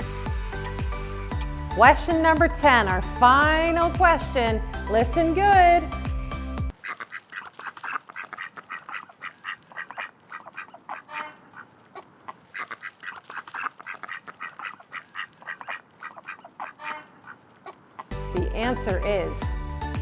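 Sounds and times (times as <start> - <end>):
ducks quacking: 6.7 - 18.2.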